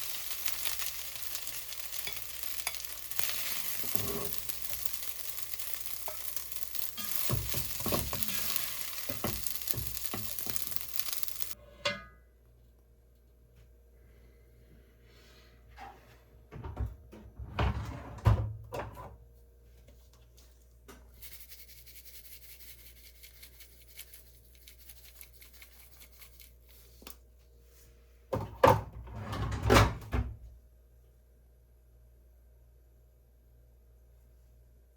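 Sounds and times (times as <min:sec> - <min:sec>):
kitchen knocks and clatter: 0:07.0 - 0:10.6, 0:16.5 - 0:19.2, 0:28.3 - 0:30.4.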